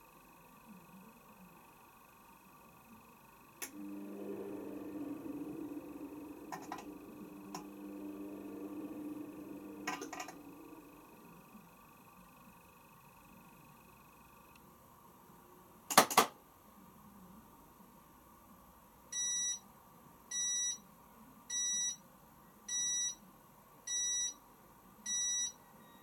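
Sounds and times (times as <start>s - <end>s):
washing machine beeping: 3.6s - 11.5s, 19.2s - 19.6s, 20.3s - 20.8s, 21.5s - 22.0s, 22.7s - 23.2s, 23.9s - 24.4s, 25.1s - 26.0s.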